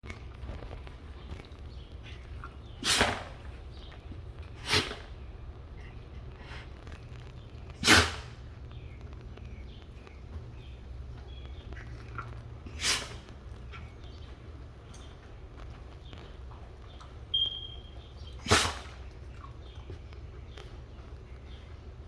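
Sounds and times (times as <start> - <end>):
puppy sneezing: 2.7 - 3.6, 4.6 - 5.2, 7.8 - 8.4, 12.6 - 13.3, 18.4 - 19.1.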